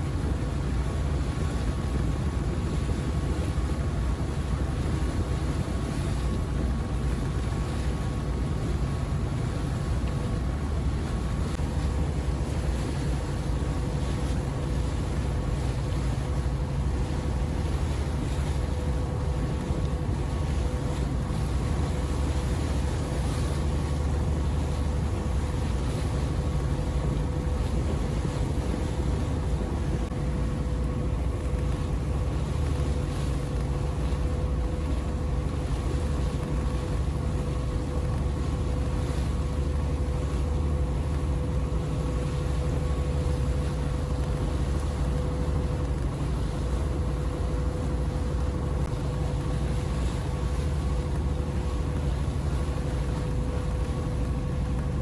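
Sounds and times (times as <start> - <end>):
boat engine droning: 0.0 - 55.0.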